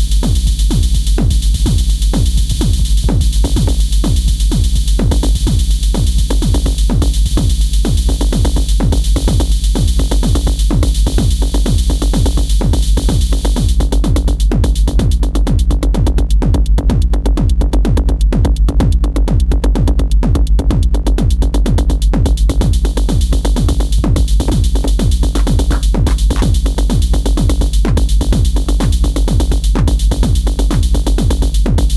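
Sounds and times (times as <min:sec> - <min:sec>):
electronic dance music: 0:24.5 - 0:26.8.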